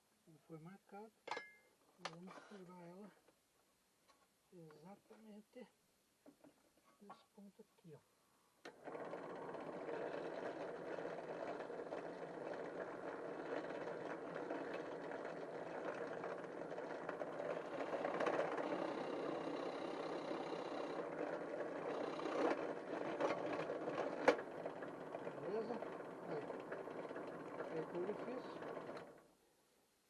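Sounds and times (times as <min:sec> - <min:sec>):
electric drill boring: 0:08.7 - 0:29.1.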